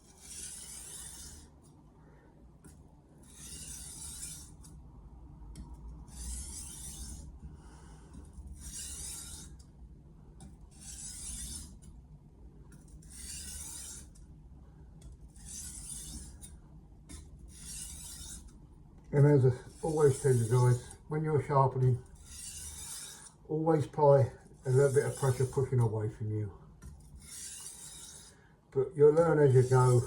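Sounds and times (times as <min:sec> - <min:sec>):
knife hissing on sharpening stone: 0:08.6 - 0:09.5, 0:22.3 - 0:23.4, 0:27.2 - 0:28.4.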